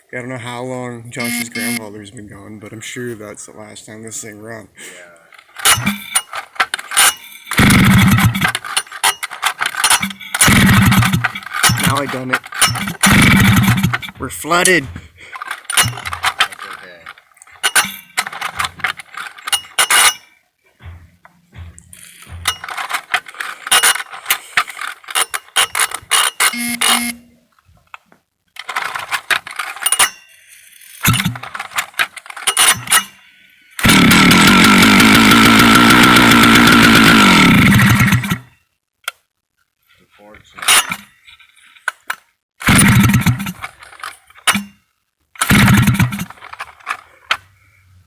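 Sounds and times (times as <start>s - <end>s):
chainsaw being cranked: 1.2s - 1.8s, 5.3s - 27.2s, 28.6s - 38.5s, 40.6s - 44.8s, 45.4s - 47.5s
chainsaw engine running: 1.2s - 1.8s, 5.4s - 19.5s, 20.8s - 26.0s, 31.0s - 31.7s, 33.8s - 38.5s, 42.7s - 43.8s, 45.4s - 46.6s.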